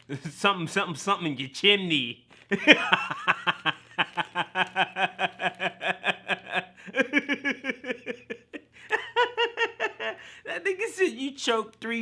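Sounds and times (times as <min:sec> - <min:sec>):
man laughing hard: 0:02.5 - 0:10.4.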